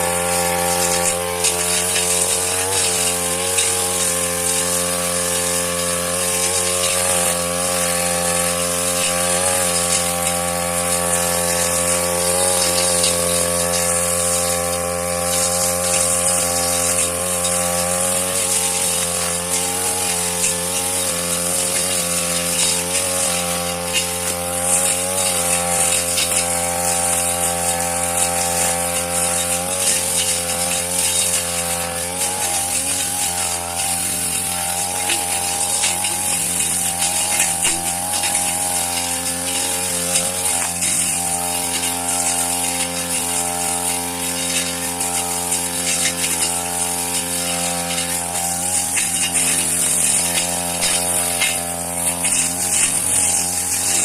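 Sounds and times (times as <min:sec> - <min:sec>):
grass cutter engine running: 0:00.0 - 0:54.0.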